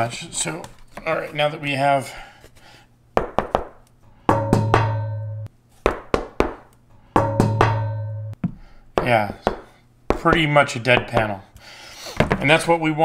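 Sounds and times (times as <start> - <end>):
low ringing of panel: 4.3 - 5.5, 7.2 - 8.4.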